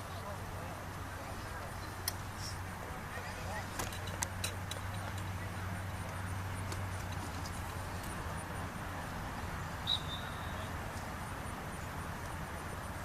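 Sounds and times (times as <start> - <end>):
steady background noise: 0.0 - 13.0
short high whistle: 9.8 - 10.7.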